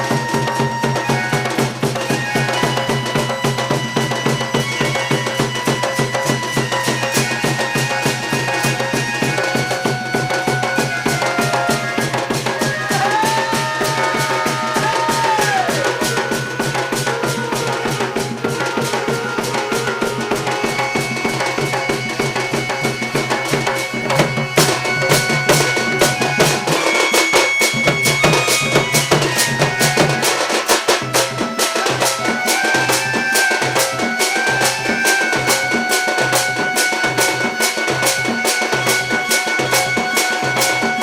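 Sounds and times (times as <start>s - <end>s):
fast dense drumming: 0.0s - 34.8s.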